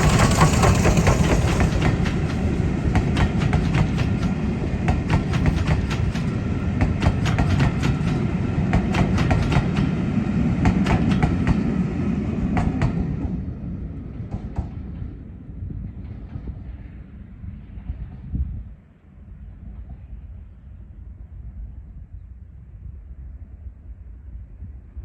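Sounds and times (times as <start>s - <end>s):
wheels clicking over rail joints: 0.0s - 9.9s
train rumbling past: 0.0s - 22.0s.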